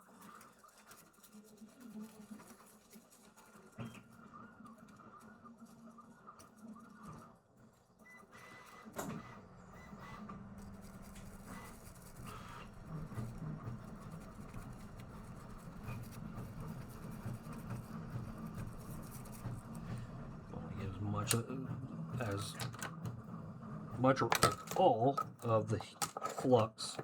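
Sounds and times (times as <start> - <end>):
brush scrubbing circuit board: 10.6 - 20.2.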